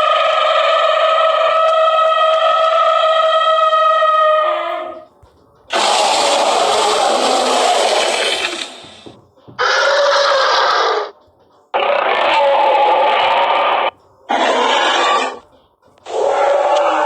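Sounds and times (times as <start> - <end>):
harsh noisy roar: 0.0 - 5.0, 5.7 - 15.4, 16.0 - 17.0
long pitched creature call: 0.0 - 5.1, 5.7 - 9.0, 9.6 - 11.2, 11.8 - 15.4, 16.0 - 17.0.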